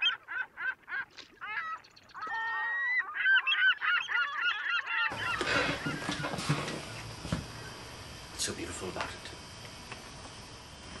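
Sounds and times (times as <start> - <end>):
seagulls calling: 0.0 - 8.1
room noise: 5.1 - 11.0.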